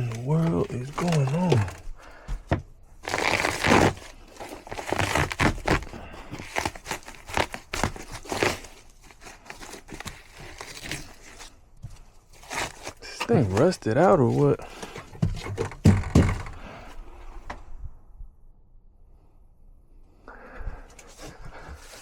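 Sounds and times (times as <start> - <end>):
material crinkling and rustling: 0.0 - 2.0, 3.0 - 16.6.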